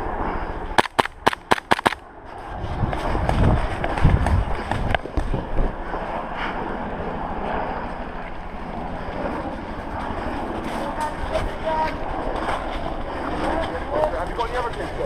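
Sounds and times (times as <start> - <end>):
wind buffeting microphone: 0.6 - 15.0.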